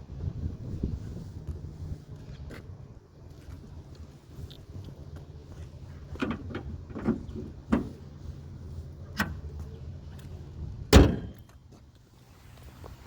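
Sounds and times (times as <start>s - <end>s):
loud heavy thump: 10.9s - 11.4s.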